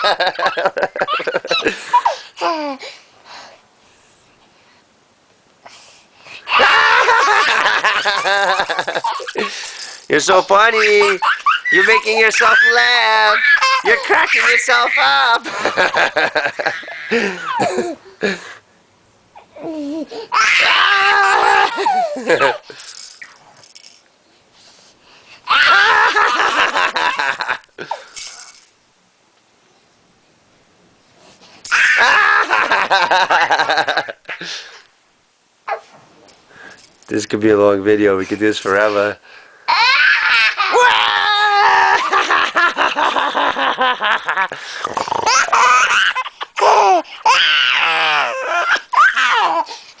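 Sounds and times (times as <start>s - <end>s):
child laughing: 0.0s - 2.8s, 6.5s - 18.1s, 19.6s - 22.8s, 25.5s - 28.1s, 31.7s - 34.5s, 39.7s - 44.6s, 45.2s - 49.7s.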